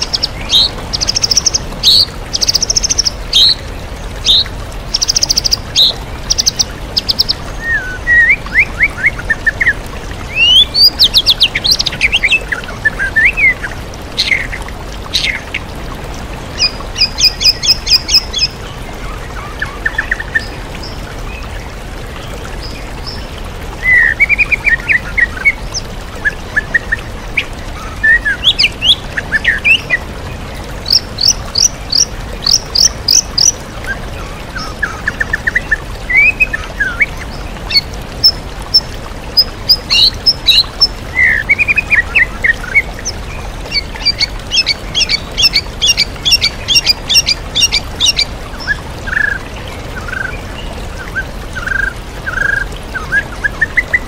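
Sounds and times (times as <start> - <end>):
waterfall rushing: 0.0 - 54.0
bird singing whistles and trills: 4.2 - 9.7.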